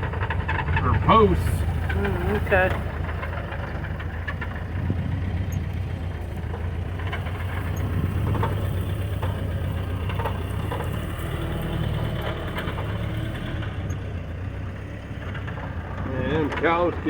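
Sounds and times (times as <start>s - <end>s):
engine low drone: 0.0s - 17.0s.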